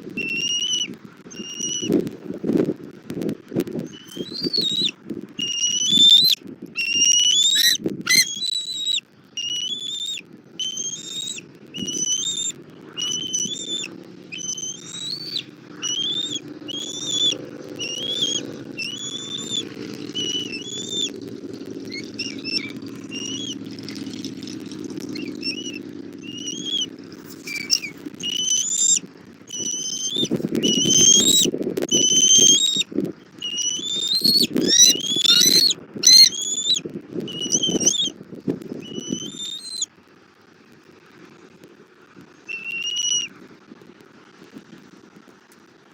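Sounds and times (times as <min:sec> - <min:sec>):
eagle chirping: 0:00.1 - 0:02.0, 0:03.8 - 0:38.1, 0:38.8 - 0:39.9, 0:42.4 - 0:43.3
low rushing noise: 0:11.3 - 0:28.4.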